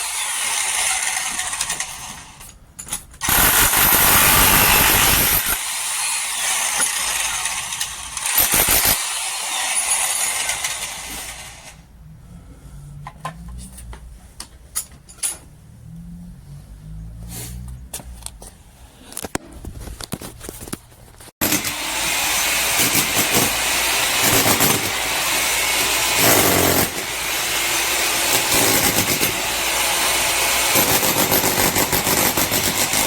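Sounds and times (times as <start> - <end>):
demolition hammer hammering: 22.5 - 33.0.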